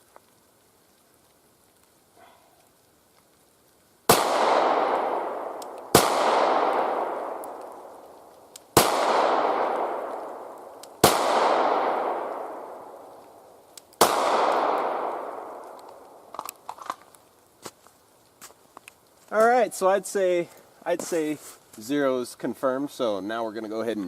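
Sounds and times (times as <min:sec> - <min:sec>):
pistol shots with long echo: 0:04.1 - 0:08.2, 0:08.8 - 0:13.1, 0:14.0 - 0:16.2.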